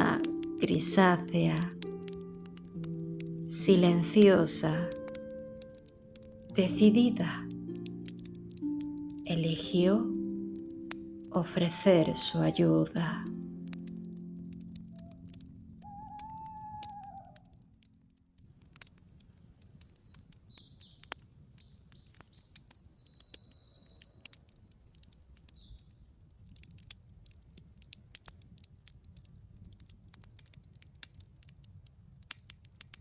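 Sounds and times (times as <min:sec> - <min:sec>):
campfire crackling and popping: 0:00.0 - 0:33.0
songbird trilling and chirping: 0:15.8 - 0:17.4, 0:18.6 - 0:25.8.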